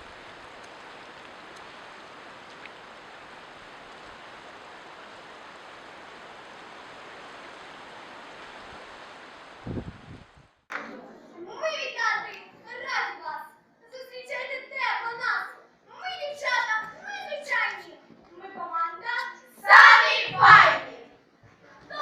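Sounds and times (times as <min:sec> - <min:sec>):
ocean surf washing: 0:00.0 - 0:10.6, 0:19.7 - 0:20.9.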